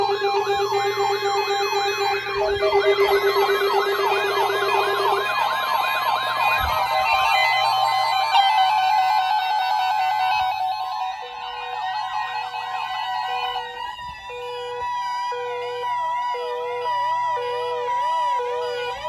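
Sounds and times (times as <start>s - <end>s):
steady low tone: 0.0s - 7.4s
electronic siren yelping: 0.0s - 14.0s.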